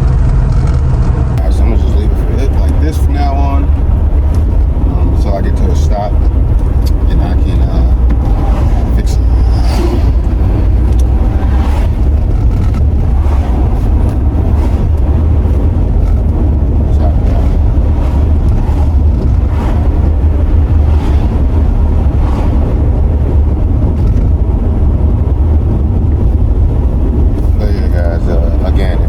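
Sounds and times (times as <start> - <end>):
car interior driving rumble: 0.0 - 29.0
faint swishes: 7.5 - 24.0.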